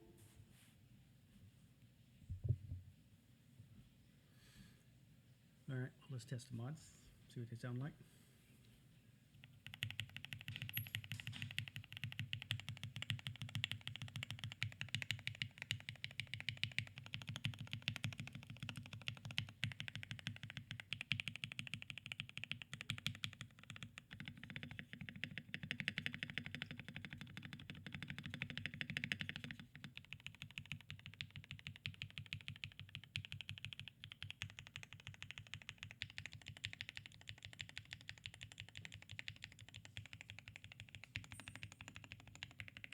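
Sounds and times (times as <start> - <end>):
mechanical keyboard typing: 9.4 - 42.9.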